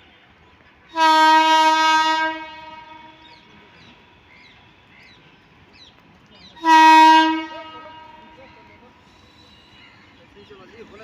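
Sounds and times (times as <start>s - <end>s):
train horn blast: 0.9s - 4.4s, 6.6s - 8.7s.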